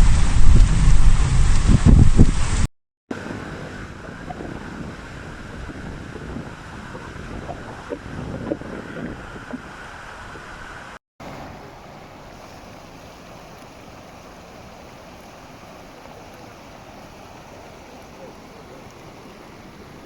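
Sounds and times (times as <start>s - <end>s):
wind buffeting microphone: 0.0s - 11.7s
rain rushing: 8.8s - 20.0s.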